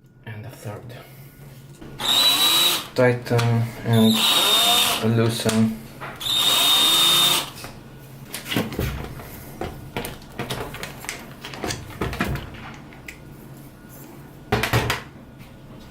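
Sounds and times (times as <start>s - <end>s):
drill clattering: 2.0s - 2.9s, 3.9s - 5.0s, 6.2s - 7.6s.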